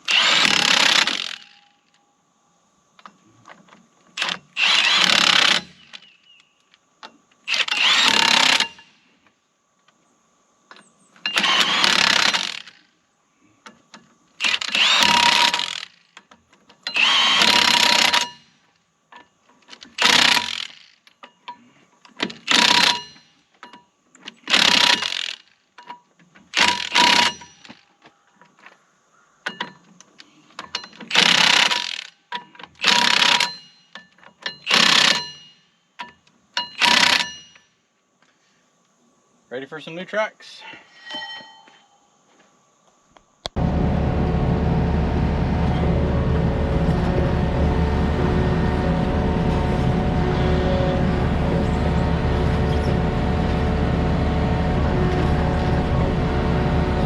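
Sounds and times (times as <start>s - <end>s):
impact wrench bursts: 0.0s - 1.6s, 4.2s - 6.0s, 7.5s - 8.9s, 11.3s - 12.8s, 14.4s - 16.0s, 16.9s - 18.4s, 20.0s - 20.9s, 22.4s - 23.2s, 24.5s - 25.5s, 26.6s - 27.8s, 31.1s - 32.1s, 32.8s - 33.7s, 34.6s - 35.5s, 36.7s - 37.5s.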